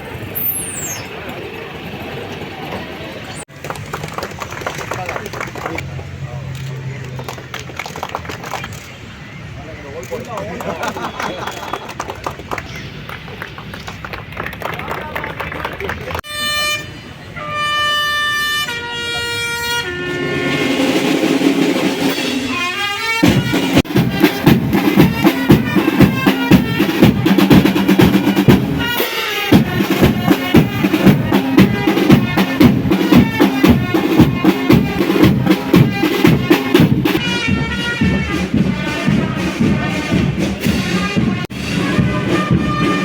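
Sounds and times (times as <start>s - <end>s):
held musical notes: 19.2s - 43.0s
driving drum beat: 20.4s - 43.0s.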